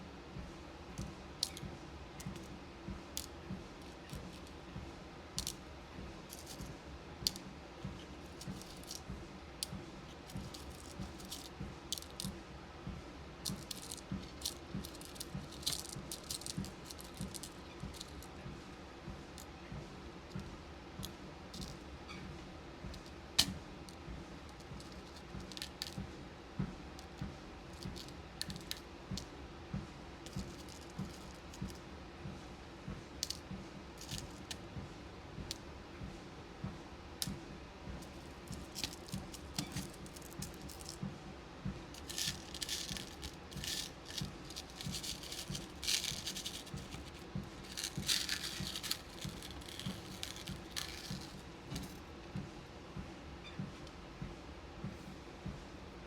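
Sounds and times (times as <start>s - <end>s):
walking pad hum: 0.0s - 56.0s
beads clicking and rattling: 0.9s - 4.6s, 5.4s - 5.6s, 6.2s - 12.4s, 13.4s - 18.4s, 21.5s - 21.8s, 22.9s - 23.6s, 24.5s - 26.0s, 27.0s - 29.3s, 30.3s - 31.8s, 34.0s - 34.6s, 38.0s - 41.1s, 41.9s - 52.0s.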